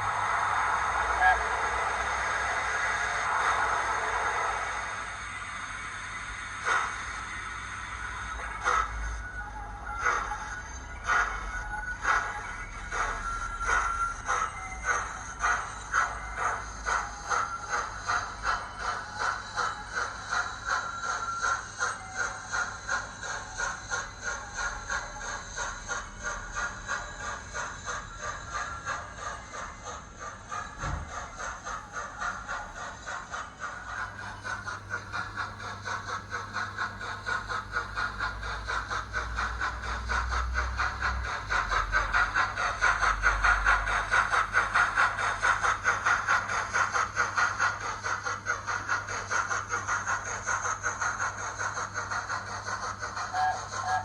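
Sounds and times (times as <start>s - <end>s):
model train mechanism running on track: 0.0s - 54.0s
steam exhaust chuffs from small speaker: 12.0s - 54.0s.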